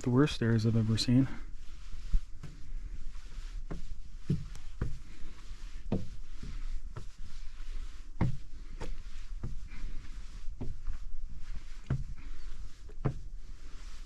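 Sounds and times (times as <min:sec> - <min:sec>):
heavy footsteps climbing stairs: 0:03.6 - 0:07.2, 0:08.2 - 0:12.3.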